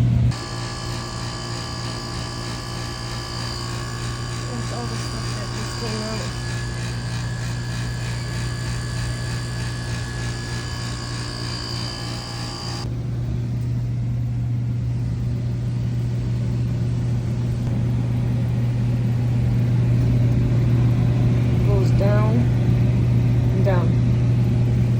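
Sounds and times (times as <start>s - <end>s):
higher whining tones: 0.0s - 12.9s
low motor hum: 0.0s - 24.9s.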